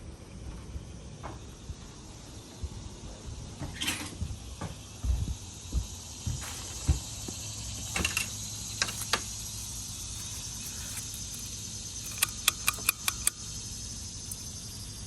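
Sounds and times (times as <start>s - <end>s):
insects chirring: 0.1s - 15.0s
sharp clicks: 7.9s - 14.5s.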